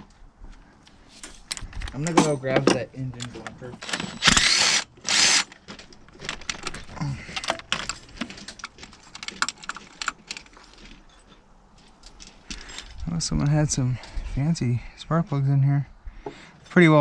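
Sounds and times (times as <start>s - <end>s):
metal tools clinking and rattling: 1.5s - 11.3s.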